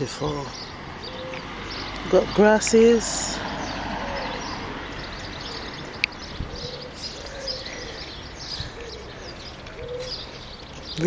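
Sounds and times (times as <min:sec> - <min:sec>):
small birds chirping: 0:00.0 - 0:11.0
pigeon cooing: 0:01.1 - 0:01.5, 0:05.4 - 0:10.4.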